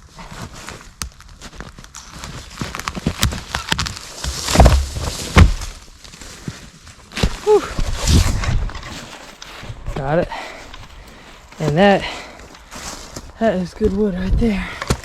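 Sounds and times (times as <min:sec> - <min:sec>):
footsteps crunching in undergrowth: 0:00.0 - 0:15.0
dry wood cracking and snapping: 0:00.1 - 0:15.0
heavy thuds: 0:04.2 - 0:05.8.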